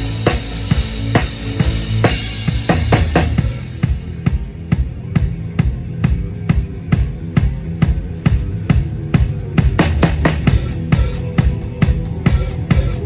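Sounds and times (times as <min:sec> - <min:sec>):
drum kit beat: 0:00.0 - 0:13.0
low steady tones: 0:00.0 - 0:13.0
cymbals ringing: 0:10.5 - 0:13.0.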